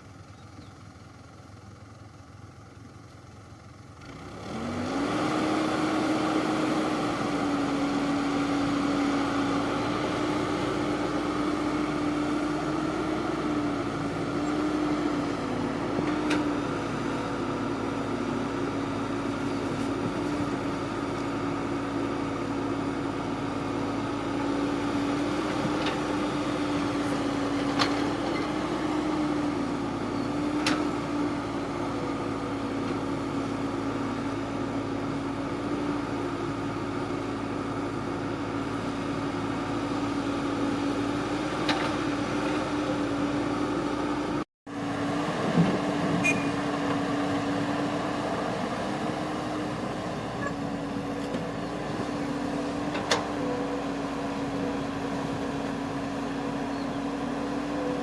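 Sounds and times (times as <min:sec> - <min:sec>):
harvesting machine engine droning: 0:00.0 - 0:58.0.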